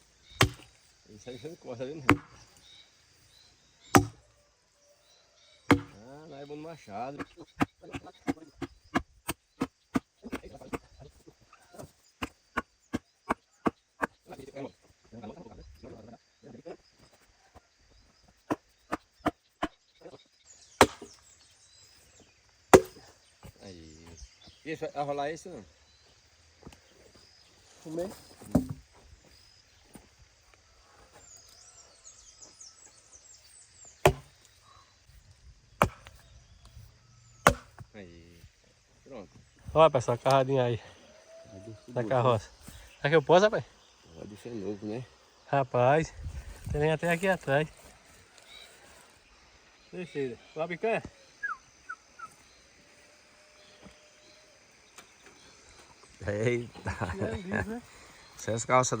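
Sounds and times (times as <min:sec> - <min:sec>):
axe chopping a log: 0:00.4 - 0:00.7, 0:02.1 - 0:02.4, 0:03.9 - 0:04.2, 0:05.7 - 0:06.0, 0:20.8 - 0:21.2, 0:22.7 - 0:23.0, 0:28.5 - 0:28.8, 0:34.0 - 0:34.3, 0:35.8 - 0:36.2, 0:37.4 - 0:37.9.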